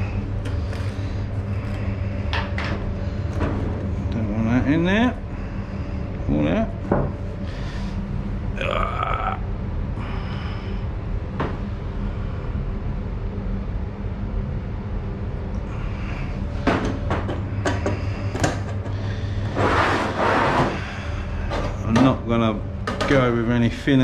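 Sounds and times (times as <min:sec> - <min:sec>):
low room hum: 0:00.0 - 0:24.0.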